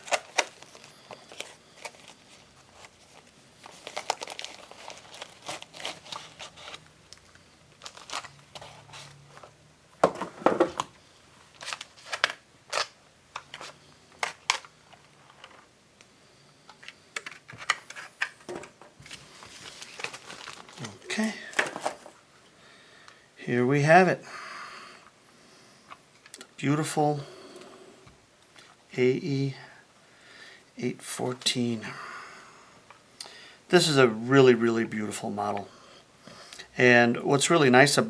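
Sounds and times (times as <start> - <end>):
packaging crinkling and rustling: 0.0 - 15.7, 19.0 - 22.2.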